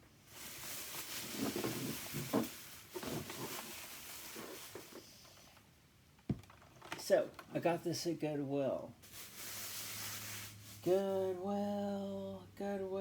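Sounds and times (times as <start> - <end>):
rustling handling noise: 0.2 - 7.7, 9.0 - 11.2.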